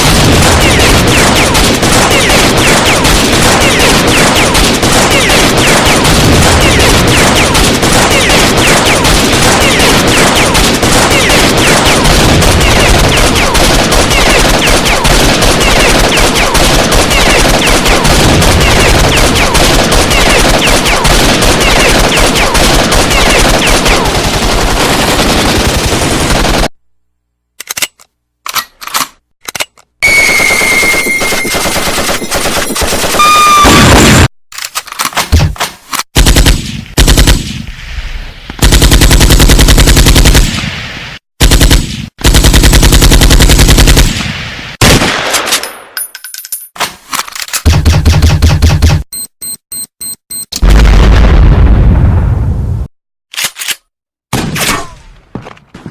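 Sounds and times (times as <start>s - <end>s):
automatic gunfire: 0.0s - 26.7s, 36.2s - 37.5s, 38.6s - 40.5s, 41.4s - 44.2s
single gunshots: 44.0s - 45.9s, 54.3s - 55.4s.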